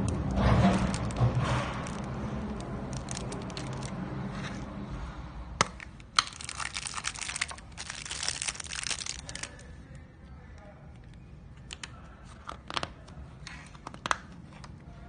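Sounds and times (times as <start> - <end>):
crinkling and rustling: 0.0 - 4.8, 6.0 - 9.7.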